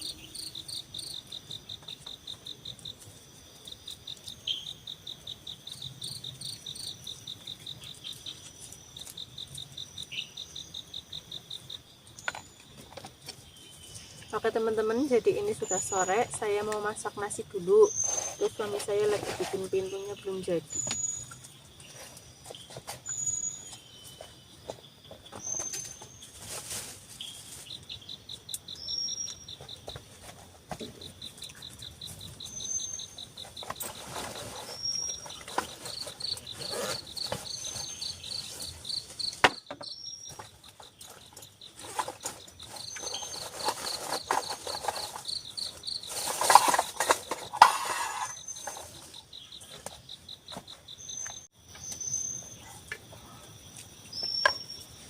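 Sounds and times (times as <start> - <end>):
knocks and rustling: 33.2 - 52.0.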